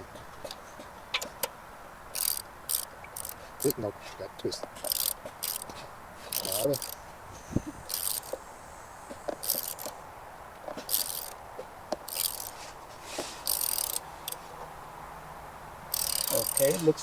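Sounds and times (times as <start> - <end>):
socket wrench clicking and rattling: 2.2 - 3.7, 4.7 - 5.7, 6.3 - 7.0, 7.9 - 8.4, 9.4 - 10.0, 10.7 - 12.6, 13.4 - 14.4, 15.9 - 16.8.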